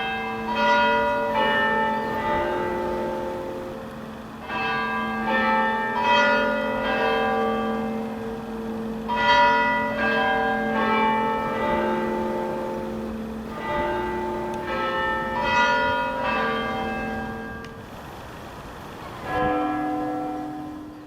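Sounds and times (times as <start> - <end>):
bells chiming: 0.5 - 4.7, 9.2 - 17.6.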